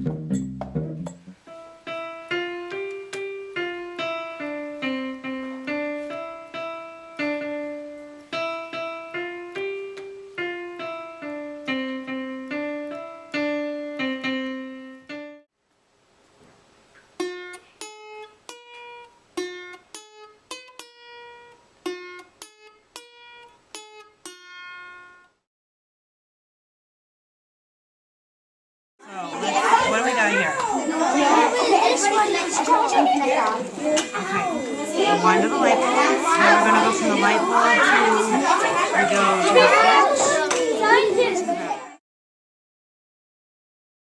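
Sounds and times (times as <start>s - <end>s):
piano keyboard melody: 0.0s - 15.5s, 34.2s - 41.1s.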